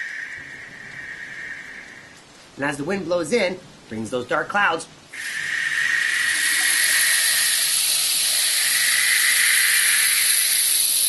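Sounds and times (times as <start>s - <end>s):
wind whistle whooshing hiss: 0.0s - 2.2s, 5.1s - 11.0s.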